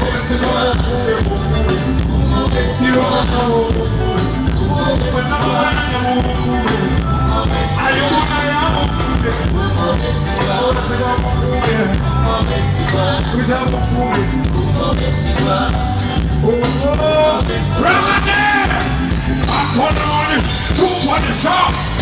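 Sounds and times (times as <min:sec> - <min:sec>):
loud amplified music: 0:00.0 - 0:22.0
person singing: 0:00.0 - 0:22.0.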